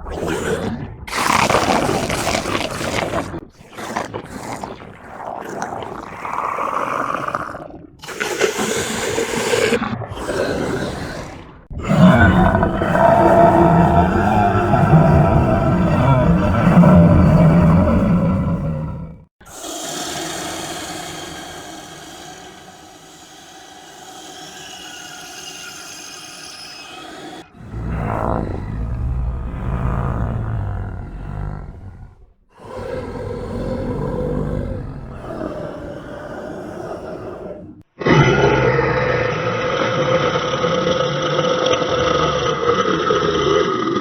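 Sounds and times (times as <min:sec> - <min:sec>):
monster growling roar: 0:00.0 - 0:44.0.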